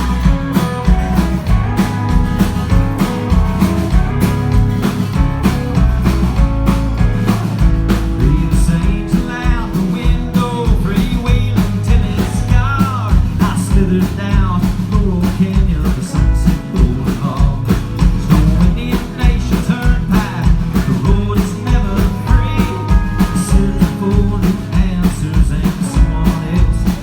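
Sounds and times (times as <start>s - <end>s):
sliding guitar notes: 0.0s - 13.1s
electric guitar: 0.0s - 14.0s
bass guitar: 0.0s - 27.0s
drum kit beat: 0.0s - 27.0s.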